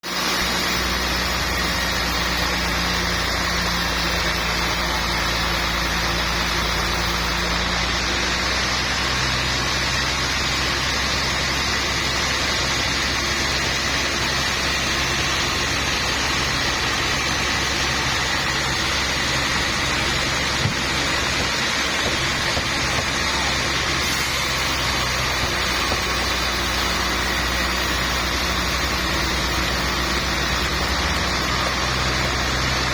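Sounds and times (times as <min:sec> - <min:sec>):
sawmill machinery running: 0:00.0 - 0:32.9.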